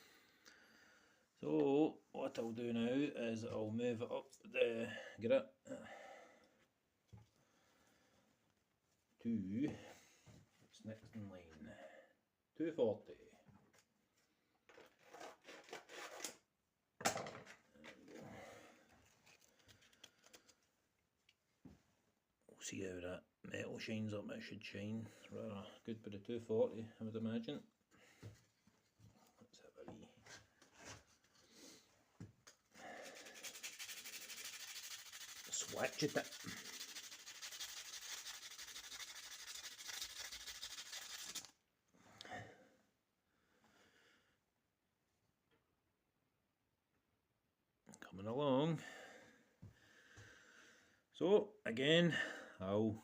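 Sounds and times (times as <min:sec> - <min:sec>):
sandpaper rustling and crinkling: 0:33.1 - 0:41.5.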